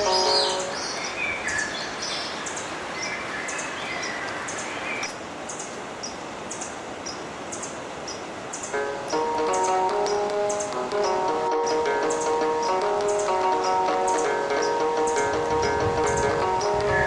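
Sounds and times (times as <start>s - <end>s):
whistled bird notes: 0.0s - 5.7s, 16.7s - 17.0s
birds chirping: 0.0s - 17.0s
river water rushing: 0.0s - 17.0s.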